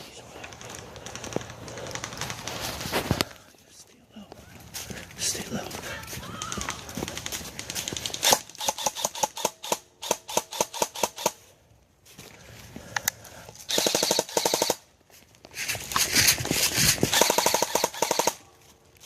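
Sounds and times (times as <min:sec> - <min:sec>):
airsoft rifle firing: 0:07.1 - 0:11.4, 0:13.7 - 0:14.8, 0:17.0 - 0:18.4.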